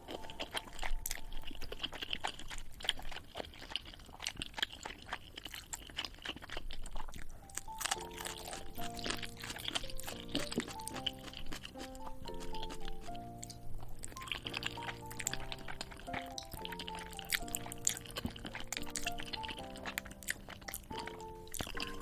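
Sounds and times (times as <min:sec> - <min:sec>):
background music: 0:00.0 - 0:01.6, 0:07.4 - 0:22.0
chewing and slurping noodles: 0:00.0 - 0:22.0
mouth smacking clicks: 0:07.4 - 0:22.0.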